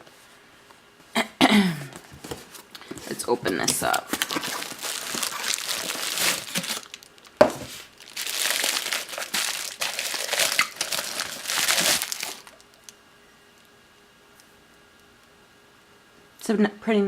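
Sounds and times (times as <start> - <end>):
packaging wrap crinkling: 2.8 - 13.0.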